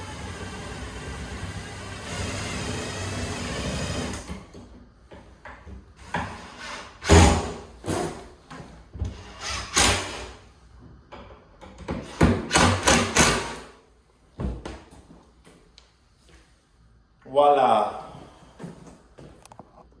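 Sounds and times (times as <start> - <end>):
cordless drill running: 0.0 - 4.3.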